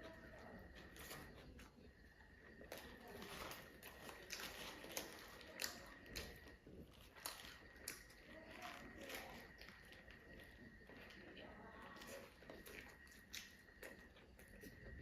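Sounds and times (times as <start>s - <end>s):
chewing and biting food: 0.0s - 15.0s.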